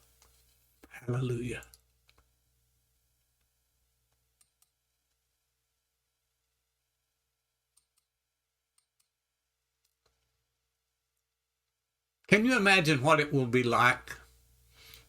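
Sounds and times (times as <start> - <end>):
faint clicks: 1.6 - 2.3.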